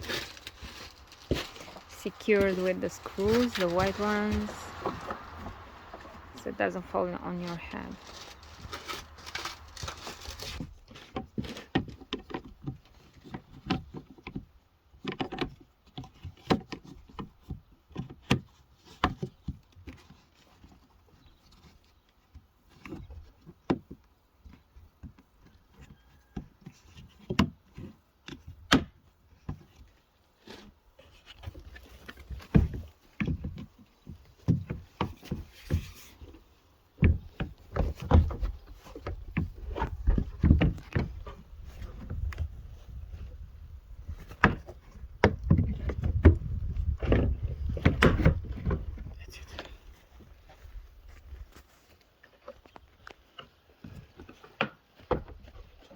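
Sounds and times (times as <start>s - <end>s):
plastic panels knocking and clattering: 37.0s - 42.4s, 44.1s - 49.1s.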